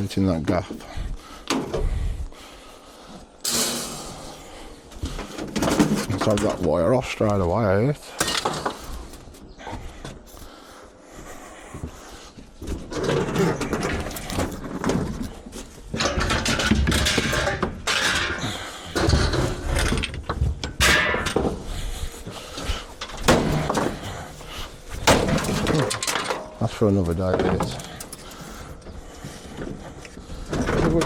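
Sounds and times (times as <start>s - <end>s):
scrap metal scraping and rattling: 3.4s - 9.4s, 12.6s - 31.0s
sharp knocks: 23.2s - 24.2s.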